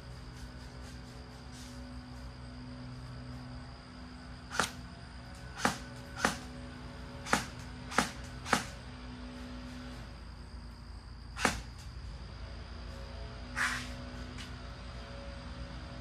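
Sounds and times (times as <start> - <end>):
airsoft gun shots snapping: 4.5 - 4.8, 7.2 - 8.7, 11.4 - 11.7.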